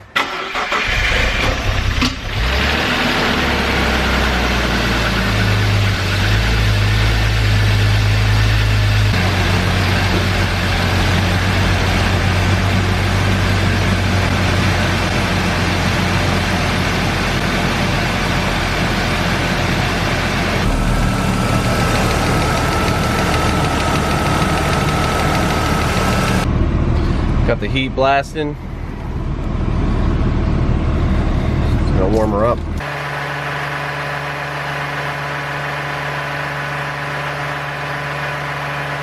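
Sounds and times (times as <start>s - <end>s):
car engine idling: 3.1s - 39.0s
thin steady whine: 20.0s - 32.3s.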